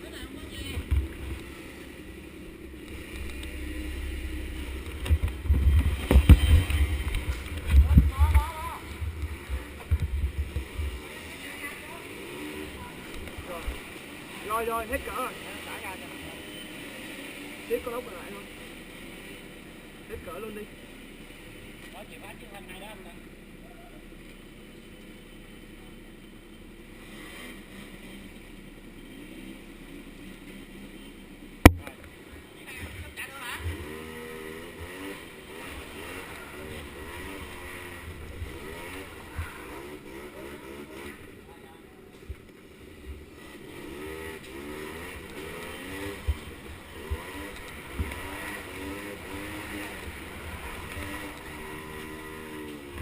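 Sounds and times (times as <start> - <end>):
small atv engine running: 0.0 - 53.0
sharp thumps: 0.7 - 11.0, 31.6 - 32.1.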